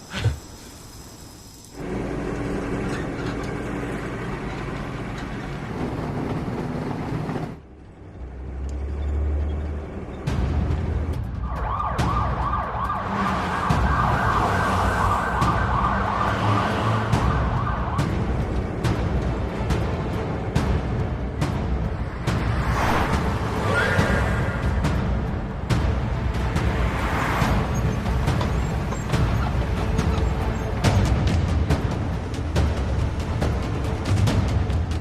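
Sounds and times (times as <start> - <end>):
vehicle rumble: 0.0 - 35.0
police siren wailing: 11.4 - 18.7.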